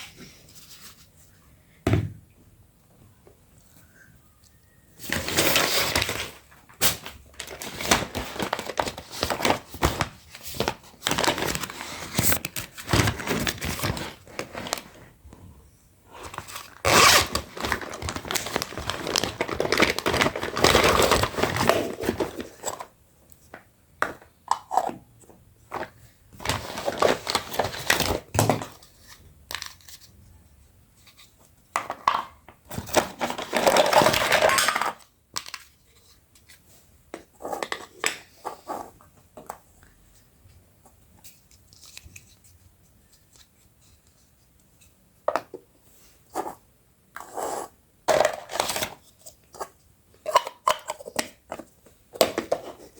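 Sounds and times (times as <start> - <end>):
plastic packaging crinkling and tearing: 5.0 - 15.0, 16.2 - 22.8.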